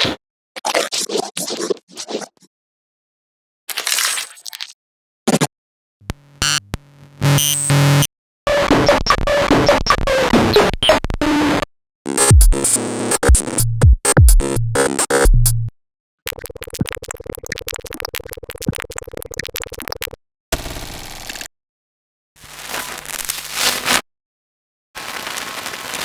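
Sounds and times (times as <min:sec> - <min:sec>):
digital crackling stutter: 0:06.1 - 0:15.7, 0:16.3 - 0:20.2
rapid clicking buzz: 0:12.1 - 0:15.7, 0:16.3 - 0:20.2.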